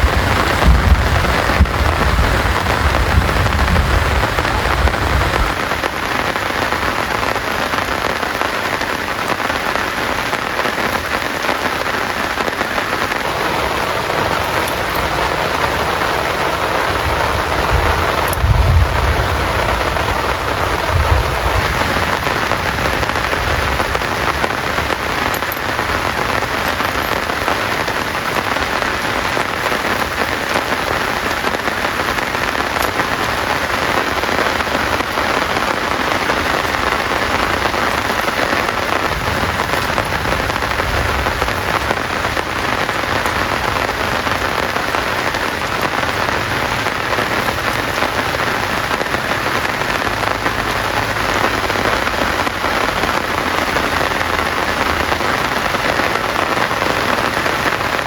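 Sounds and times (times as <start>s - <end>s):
heavy rain falling: 0.0s - 58.0s.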